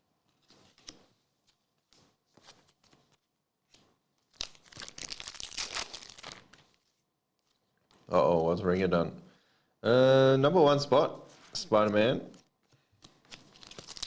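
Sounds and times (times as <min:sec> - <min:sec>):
wrapper tearing open: 0:04.3 - 0:06.8, 0:13.1 - 0:14.0
cards rustling: 0:04.4 - 0:06.9, 0:11.3 - 0:14.0.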